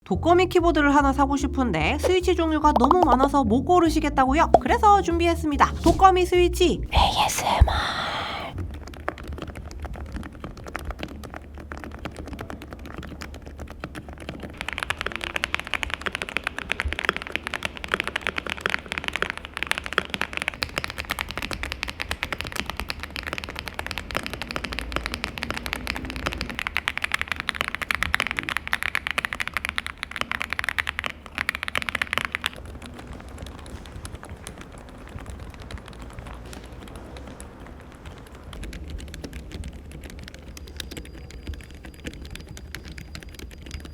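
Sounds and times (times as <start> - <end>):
mechanical keyboard typing: 14.2 - 43.9.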